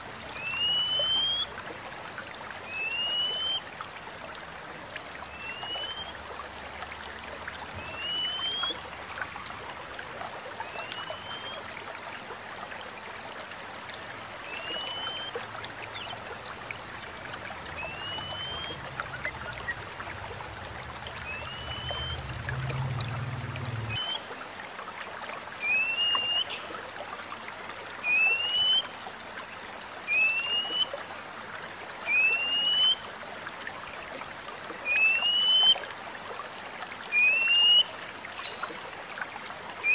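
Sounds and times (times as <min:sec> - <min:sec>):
trickling stream: 0:00.0 - 0:39.9
bird whistling: 0:00.4 - 0:01.5, 0:02.7 - 0:03.6, 0:05.4 - 0:06.1, 0:07.8 - 0:08.8, 0:10.8 - 0:11.6, 0:14.5 - 0:15.4, 0:17.8 - 0:19.8, 0:21.2 - 0:22.2, 0:25.6 - 0:26.6, 0:28.1 - 0:28.8, 0:30.1 - 0:30.9, 0:32.1 - 0:33.0, 0:34.9 - 0:35.8, 0:37.2 - 0:37.9
low hum: 0:16.8 - 0:24.1.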